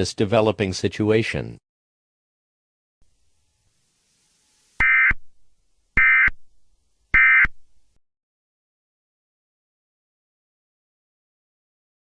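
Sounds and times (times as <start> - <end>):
short data tone bursts: 4.6 - 5.3, 6.0 - 6.4, 7.2 - 7.6.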